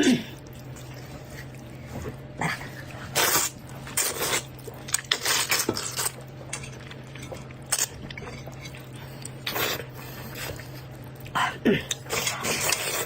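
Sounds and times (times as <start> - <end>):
utensils clinking and scraping in bowl: 3.2 - 10.9.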